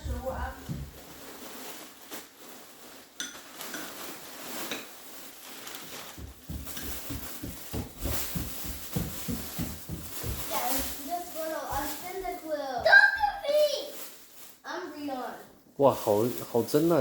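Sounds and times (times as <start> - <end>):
low thuds: 0.0 - 1.0
objects clinking and rustling: 0.0 - 12.6.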